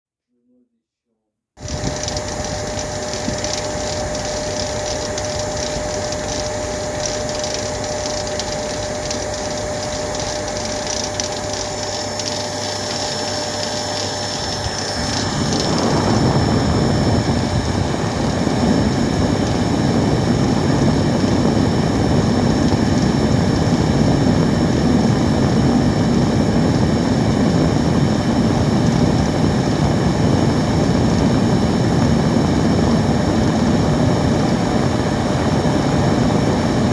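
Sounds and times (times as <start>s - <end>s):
vacuum cleaner running: 1.6s - 36.9s.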